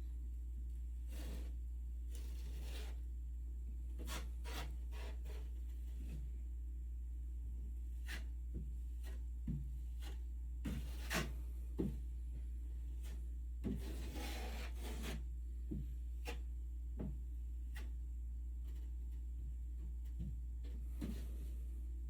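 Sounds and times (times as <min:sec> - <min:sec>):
steady low hum: 0:00.0 - 0:22.0
drywall knife scraping compound: 0:01.0 - 0:03.1, 0:03.9 - 0:06.3, 0:07.9 - 0:12.1, 0:12.8 - 0:18.0, 0:20.2 - 0:21.6.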